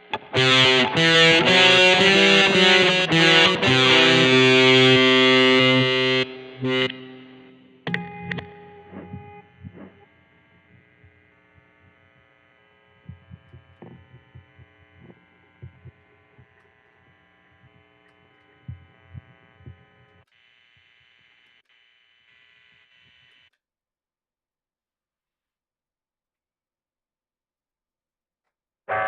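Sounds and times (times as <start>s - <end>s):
electric guitar hum and buzz: 0.0s - 23.5s
soft low thumps: 8.9s - 10.0s, 13.0s - 16.6s, 18.6s - 19.9s.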